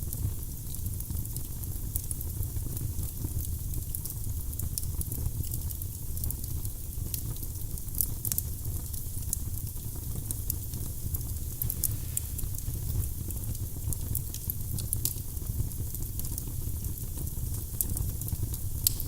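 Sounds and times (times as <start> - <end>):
fire flames rumbling: 10.6 - 15.4.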